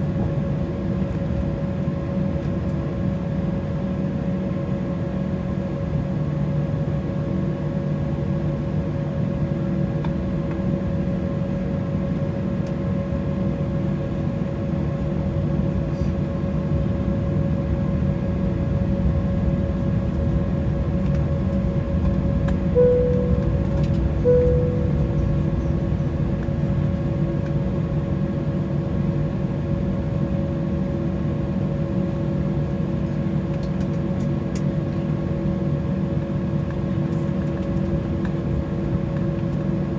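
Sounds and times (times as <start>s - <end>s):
airliner cabin hum: 0.0s - 39.9s
cabin chime tones: 22.8s - 25.9s.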